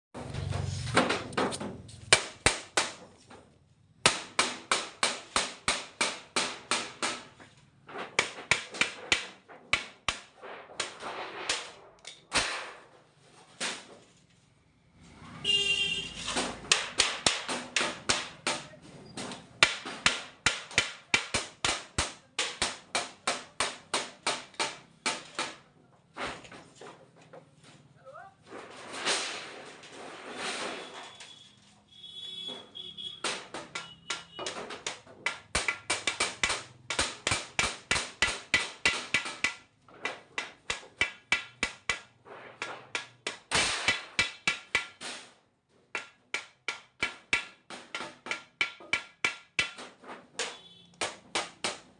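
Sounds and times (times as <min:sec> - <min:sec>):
sharp knocks: 0:33.1 - 0:45.3, 0:45.9 - 0:51.9.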